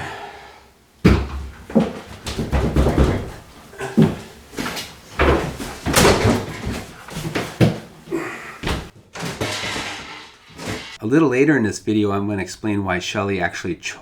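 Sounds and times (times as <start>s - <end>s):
wood knocks and bangs: 0.9s - 11.0s.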